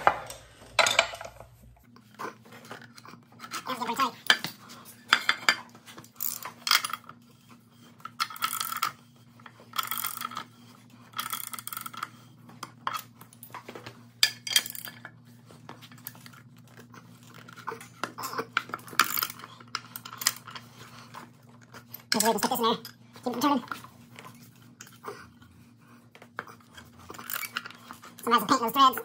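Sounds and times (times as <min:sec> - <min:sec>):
metal tools scraping and clinking: 0:00.0 - 0:01.6, 0:14.2 - 0:15.1, 0:26.6 - 0:29.0.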